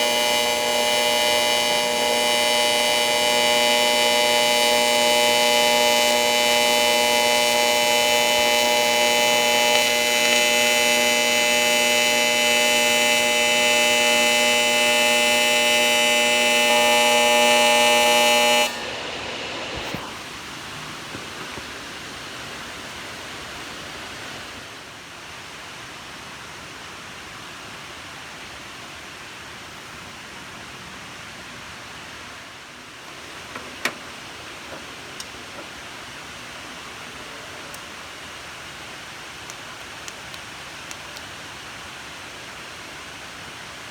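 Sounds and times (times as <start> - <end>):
welding arc buzz: 0.0 - 22.3, 33.2 - 36.0.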